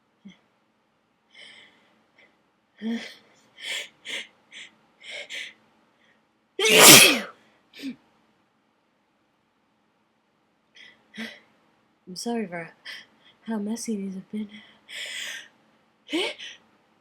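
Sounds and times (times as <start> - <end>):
breathy catches before sneeze: 6.6 - 7.3
person sneezing loudly: 6.6 - 7.3.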